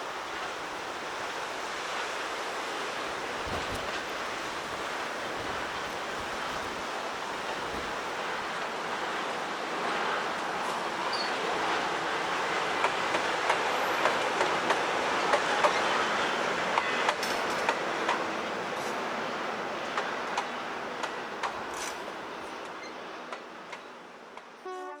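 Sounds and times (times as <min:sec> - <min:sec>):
train rumble: 0:00.0 - 0:25.0
train wheels clicking over rail joints: 0:10.6 - 0:19.1, 0:19.8 - 0:24.6.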